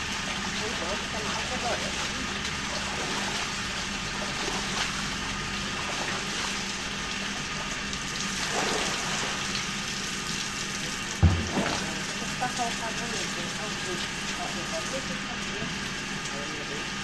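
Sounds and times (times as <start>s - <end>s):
water running: 0.0s - 17.0s
dull thump: 11.2s - 12.2s.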